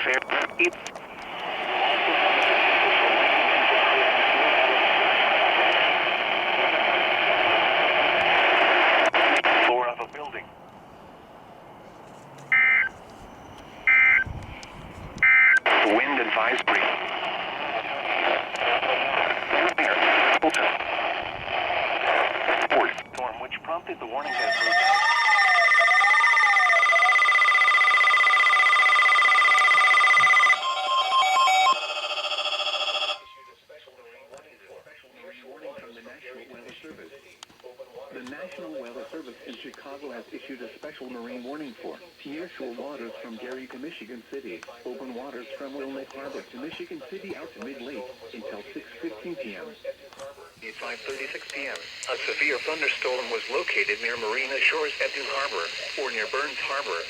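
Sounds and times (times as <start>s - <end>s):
radio static hiss: 0.0s - 10.5s, 13.8s - 25.5s, 32.5s - 57.0s
short electronic beeps: 12.6s - 12.9s, 13.9s - 14.3s
tone sliding in pitch: 24.2s - 27.9s
steady high alert tone: 24.2s - 33.5s.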